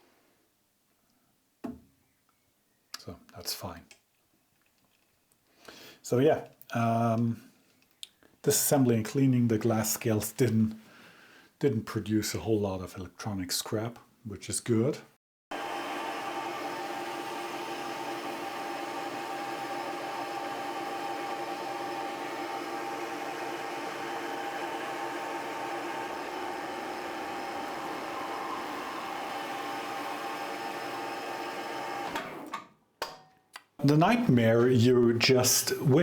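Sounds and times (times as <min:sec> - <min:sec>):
metal lathe whining cut: 0:15.5 - 0:32.5.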